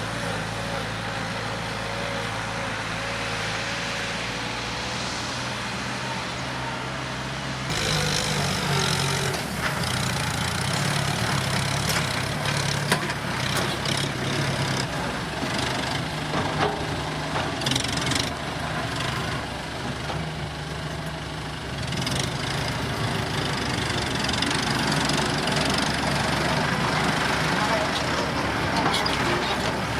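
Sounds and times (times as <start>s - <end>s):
tractor diesel engine running: 7.7s - 29.9s
clanks and rattles: 15.5s - 18.2s.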